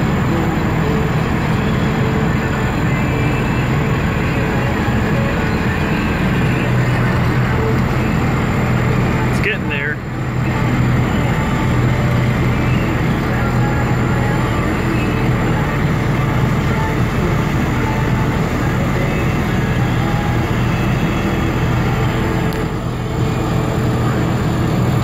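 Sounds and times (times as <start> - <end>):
diesel engine running: 0.0 - 25.0.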